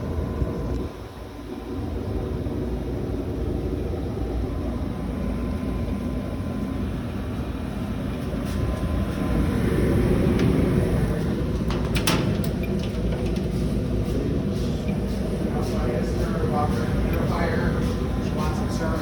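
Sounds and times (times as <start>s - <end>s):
machinery rumbling: 4.1s - 19.0s.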